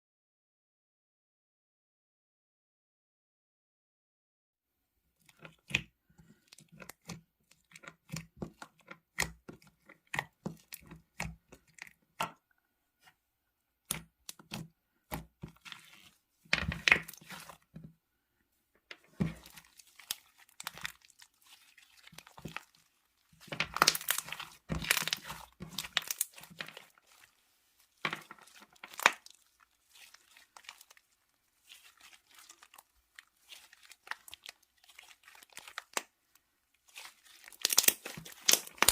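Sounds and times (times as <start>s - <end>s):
slime crackling and popping: 19.2s - 27.2s, 28.0s - 36.1s, 36.8s - 38.9s.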